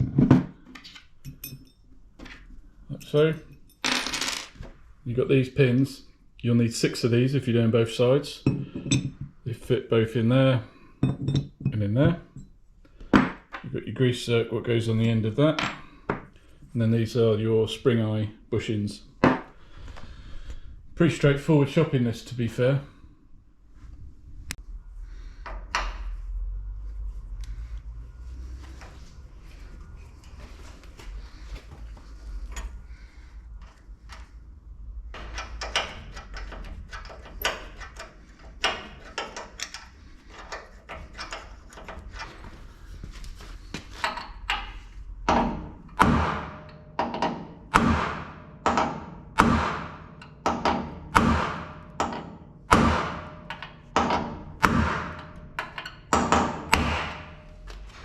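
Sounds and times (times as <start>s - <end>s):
hammer striking metal: 45.3s - 57.6s.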